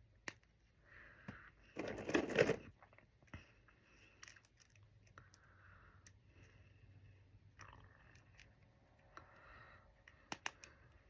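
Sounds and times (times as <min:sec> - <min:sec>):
plastic pieces rubbing: 0:01.6 - 0:02.9
small plastic clicks: 0:10.0 - 0:11.0.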